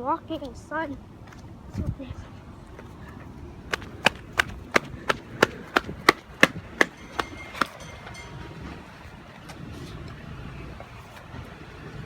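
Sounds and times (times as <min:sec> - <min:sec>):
sharp knocks: 0:03.7 - 0:08.1.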